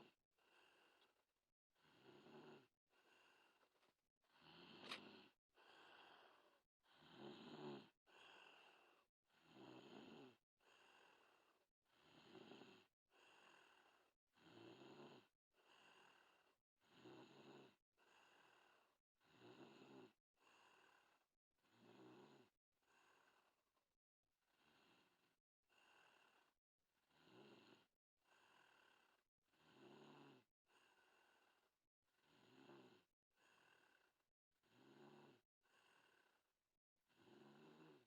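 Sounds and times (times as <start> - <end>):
girl snoring faintly: 25.8 - 38.0.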